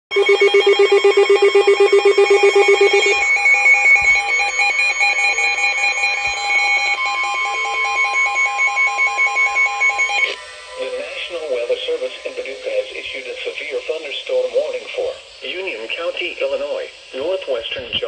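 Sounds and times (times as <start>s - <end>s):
fast-pulsing low beep: 0.1s - 10.4s
higher pulsing electronic tones: 0.1s - 14.6s.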